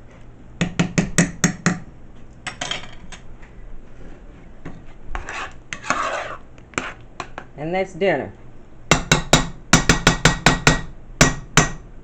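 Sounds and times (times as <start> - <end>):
metal scraping pots and dishes: 5.2 - 7.4.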